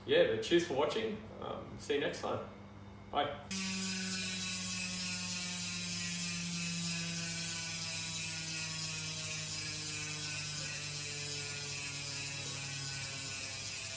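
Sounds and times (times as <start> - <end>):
bicycle hub ratchet buzz: 3.5 - 13.9.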